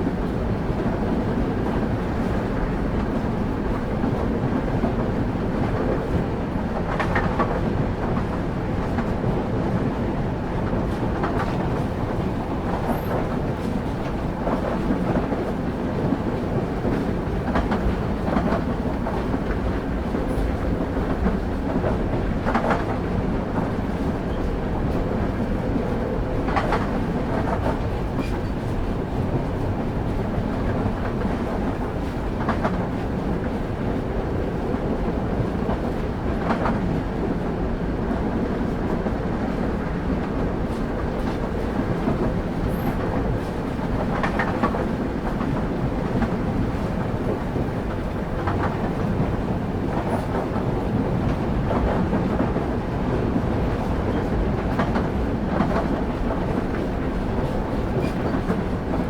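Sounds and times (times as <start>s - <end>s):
train wheels rumbling on track: 0.0s - 59.0s.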